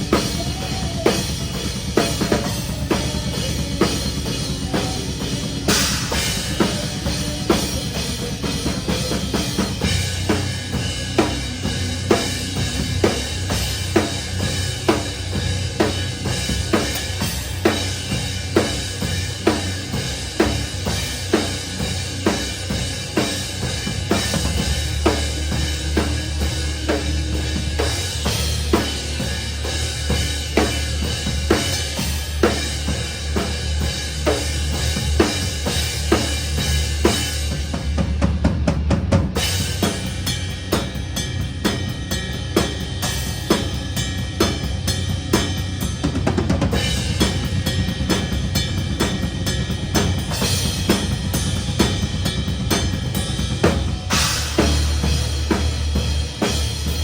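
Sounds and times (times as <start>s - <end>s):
band low-end rumble: 0.0s - 57.0s
metal drumming: 0.0s - 57.0s.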